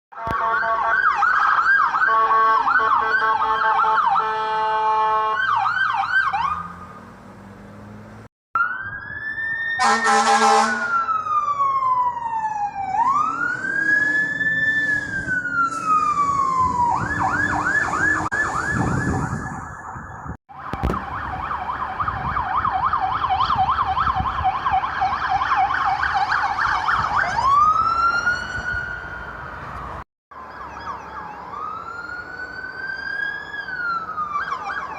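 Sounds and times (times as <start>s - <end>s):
fast yelp sirens: 0.2s - 6.8s, 8.6s - 34.9s
slow wailing siren: 0.2s - 7.1s, 8.6s - 34.9s
vehicle horn blast: 2.1s - 5.4s, 9.8s - 11.0s.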